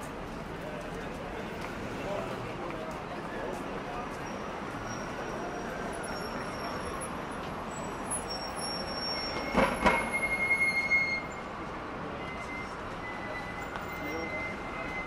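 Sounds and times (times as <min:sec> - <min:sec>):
city street traffic: 0:00.0 - 0:15.0
high metallic squeal: 0:04.2 - 0:07.1, 0:07.7 - 0:15.0.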